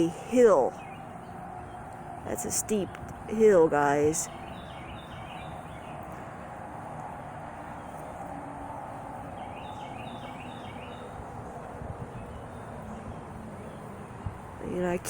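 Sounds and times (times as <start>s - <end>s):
wind: 0.0s - 15.0s
bird chirping: 0.6s - 3.1s, 3.8s - 6.4s, 9.2s - 15.0s.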